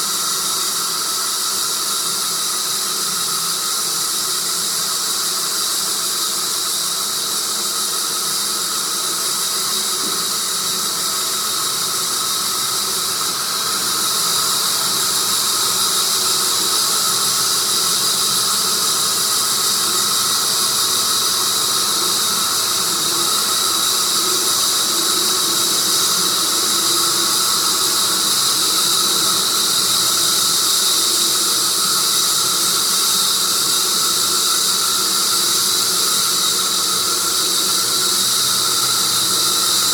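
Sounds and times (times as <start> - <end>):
sawmill blade cutting log: 8.3 - 39.9.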